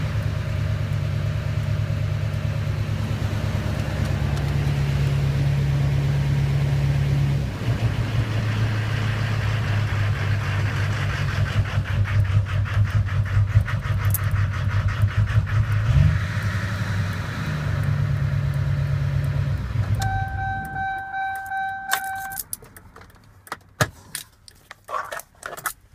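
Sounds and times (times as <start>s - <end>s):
diesel engine clattering: 0.0s - 23.2s
electronic chime beeping: 20.0s - 22.4s.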